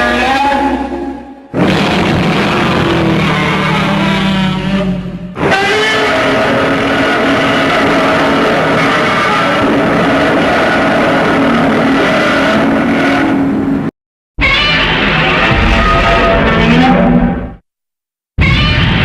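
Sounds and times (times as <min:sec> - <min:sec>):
monster roar: 0:00.0 - 0:13.4.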